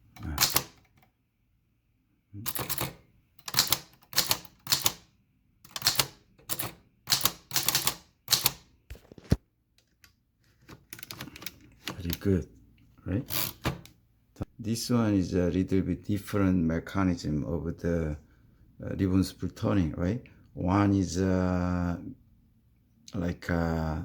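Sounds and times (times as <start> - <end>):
typewriter clicks: 0.2 - 1.0, 2.5 - 5.0, 5.7 - 8.7
typewriter typebar strikes: 0.3 - 0.8, 2.5 - 5.0, 5.7 - 8.6.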